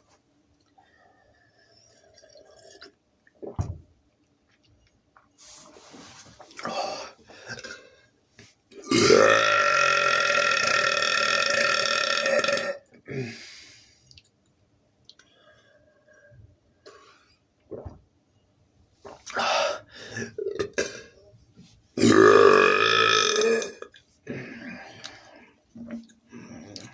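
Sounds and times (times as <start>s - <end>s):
man burping: 8.8s - 13.4s, 19.3s - 21.1s, 22.0s - 25.1s.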